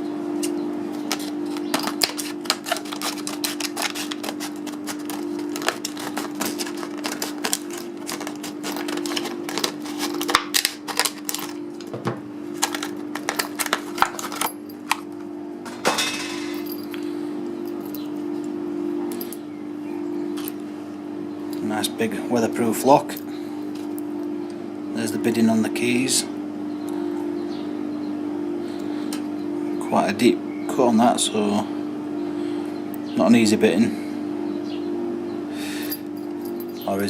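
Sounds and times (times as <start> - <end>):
low background hum: 0.0 - 37.0
padlock and keys clinking: 1.0 - 11.9, 12.6 - 15.1, 16.2 - 17.0, 17.6 - 18.2, 35.8 - 37.0.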